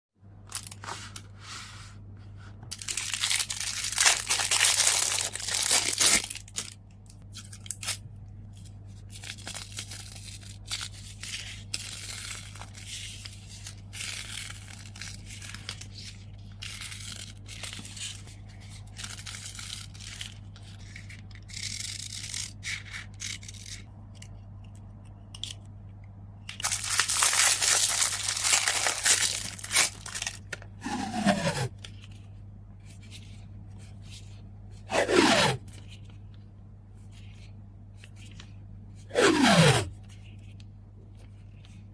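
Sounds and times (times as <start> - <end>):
packaging tearing: 2.7 - 6.8, 26.6 - 31.8
paper and plastic crinkling: 2.7 - 7.9, 26.5 - 30.7.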